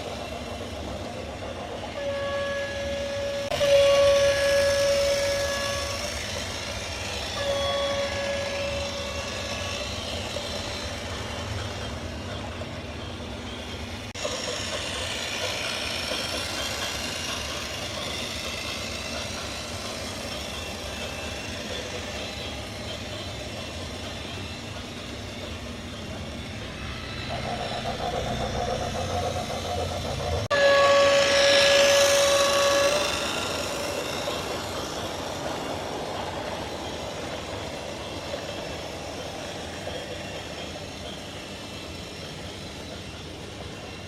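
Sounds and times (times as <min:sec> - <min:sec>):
traffic and machine noise: 0:00.0 - 0:44.0
loud horn note: 0:30.5 - 0:33.0.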